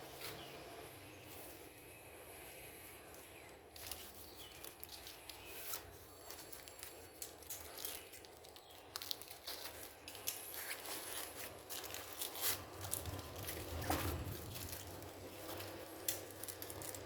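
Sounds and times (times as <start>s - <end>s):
plastic packaging rustling: 3.4s - 17.0s.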